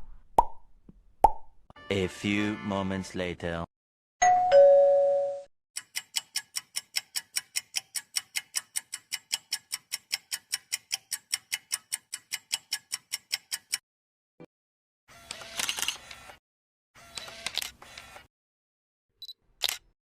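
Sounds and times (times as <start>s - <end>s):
fast clock ticking: 5.8s - 13.8s.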